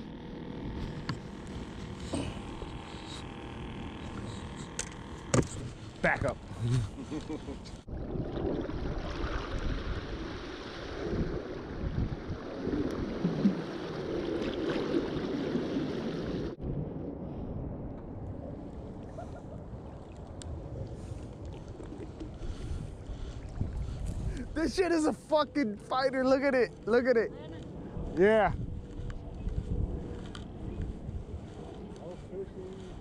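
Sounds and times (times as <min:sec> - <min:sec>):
water lapping at shore: 0:00.1 - 0:16.6, 0:18.8 - 0:26.4
wind buffeting microphone: 0:07.8 - 0:13.4, 0:16.3 - 0:25.2, 0:26.6 - 0:33.0.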